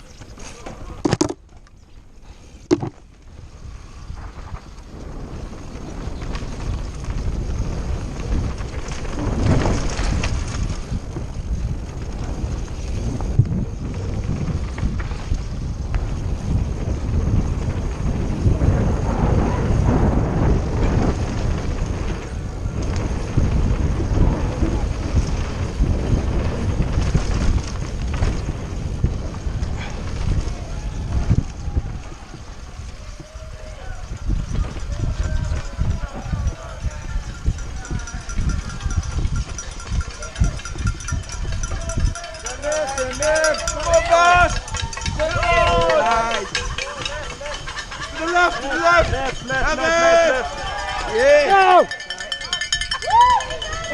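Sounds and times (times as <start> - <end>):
bike tyres and frame rattling: 0.0 - 53.9
wind on microphone: 0.0 - 53.9
knocks from rocks and bumps: 0.4 - 1.6, 2.7 - 3.0.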